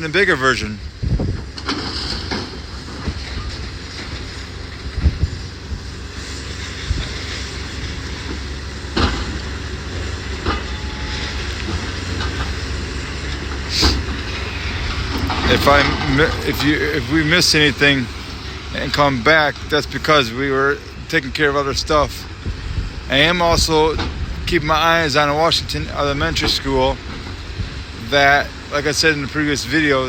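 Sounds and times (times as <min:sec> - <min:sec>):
machinery engine rumble: 0:00.0 - 0:30.0
debris knocks and crashes: 0:01.4 - 0:05.3, 0:14.9 - 0:17.7.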